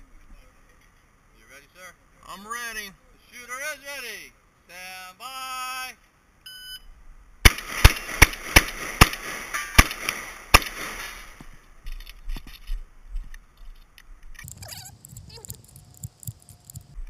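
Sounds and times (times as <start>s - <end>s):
shot timer beep: 6.5s - 6.9s
shotgun shots: 7.4s - 11.4s
faint clicking and handling noises: 11.9s - 17.0s.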